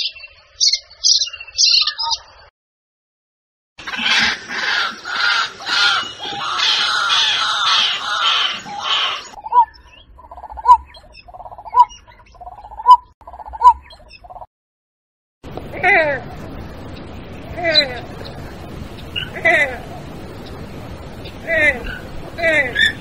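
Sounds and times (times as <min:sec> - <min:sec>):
bird harsh chattering: 0:03.8 - 0:14.4.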